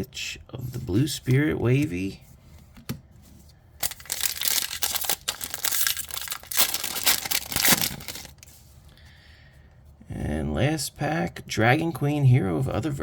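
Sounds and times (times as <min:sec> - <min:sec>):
wrapper being torn and crinkled: 0:03.8 - 0:08.5.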